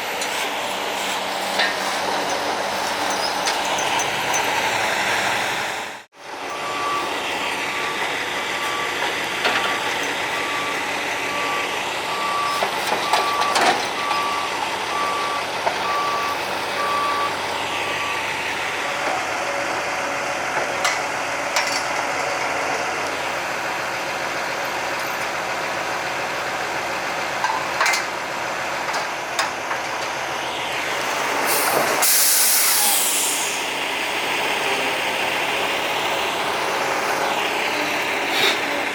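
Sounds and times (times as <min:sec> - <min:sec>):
heavy diesel machinery running: 0:00.0 - 0:38.9
reversing alarm beeping: 0:06.5 - 0:18.3
air brake hiss: 0:31.4 - 0:33.8.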